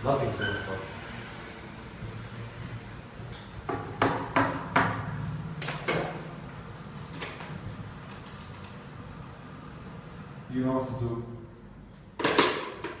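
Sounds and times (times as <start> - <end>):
sharp knocks: 3.6 - 5.0.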